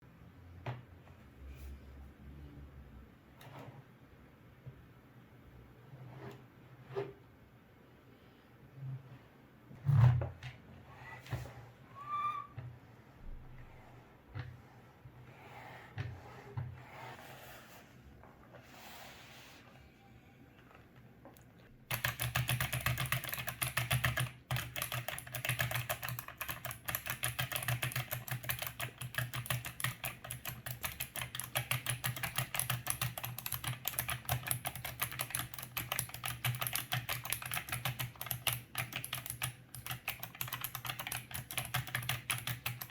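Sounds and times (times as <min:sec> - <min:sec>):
keyboard typing fast: 0:21.9 - 0:42.9.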